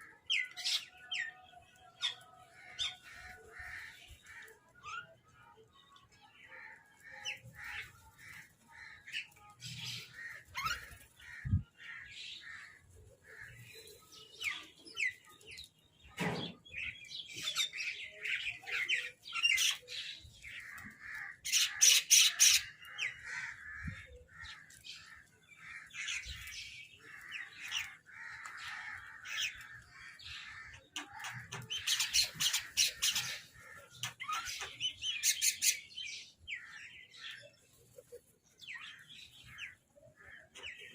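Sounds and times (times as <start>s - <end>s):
crows cawing: 20.6s - 26.2s, 27.0s - 34.1s.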